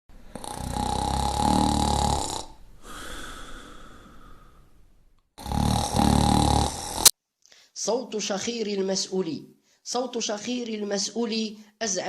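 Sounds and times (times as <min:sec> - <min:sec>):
person snoring: 0:00.3 - 0:04.6, 0:05.4 - 0:07.1.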